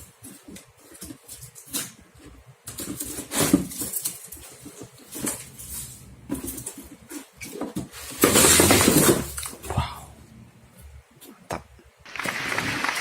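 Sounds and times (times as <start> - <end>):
packaging rustling: 12.1 - 13.0.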